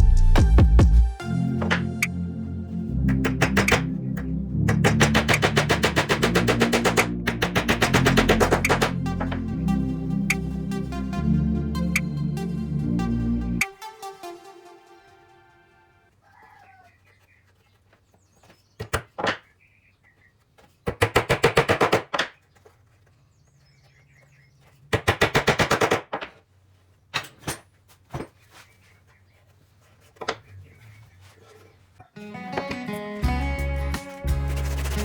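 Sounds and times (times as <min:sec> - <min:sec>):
sharp knocks: 0:03.1 - 0:03.9, 0:04.7 - 0:09.4.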